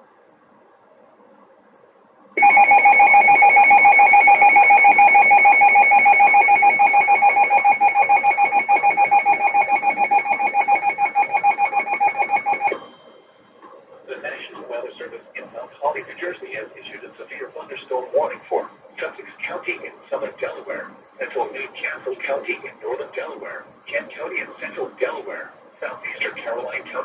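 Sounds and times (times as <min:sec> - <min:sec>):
loud steady electronic alert tone: 0:02.4 - 0:13.3.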